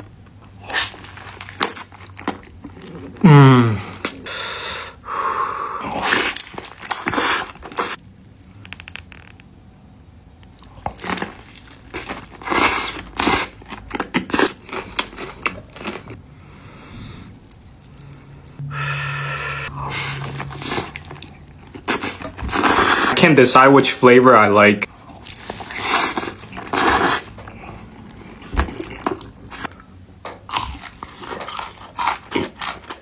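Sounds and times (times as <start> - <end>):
person crunching and chewing food: 0.0 - 9.4, 10.4 - 23.2, 24.9 - 33.0
steady low hum: 16.2 - 22.7.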